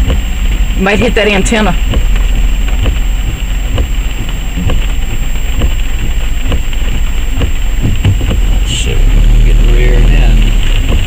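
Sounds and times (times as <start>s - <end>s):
car engine and road noise: 0.0s - 11.0s
light knocks: 5.6s - 8.5s.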